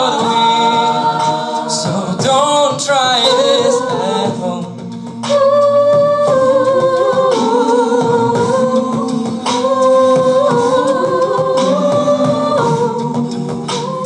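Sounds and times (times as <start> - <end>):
a cappella group singing chords: 0.0 - 14.0.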